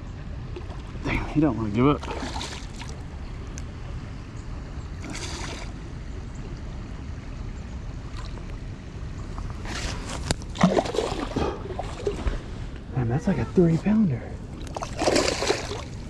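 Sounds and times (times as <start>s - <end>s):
creek water rushing: 9.5s - 16.0s
fish splashing at surface: 9.7s - 12.4s, 14.6s - 16.0s.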